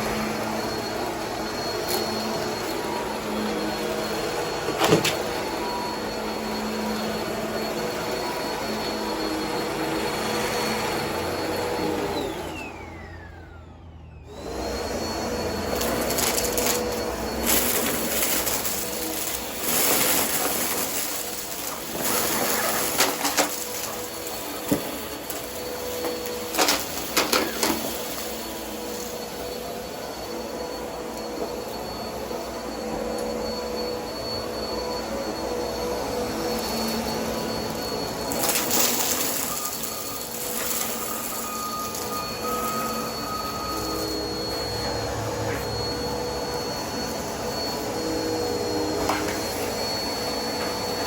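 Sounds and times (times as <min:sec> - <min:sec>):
vacuum cleaner whining: 0:00.0 - 0:51.0
debris crackling in vacuum: 0:15.1 - 0:29.3, 0:36.5 - 0:44.8.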